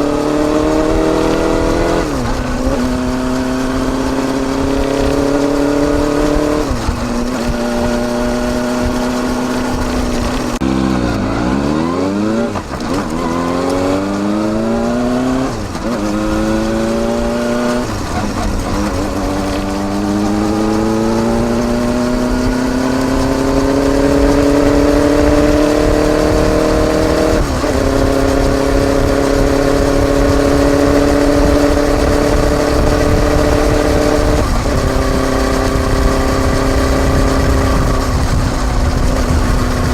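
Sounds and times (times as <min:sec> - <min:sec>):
motorcycle exhaust accelerating: 0:00.0 - 0:39.9.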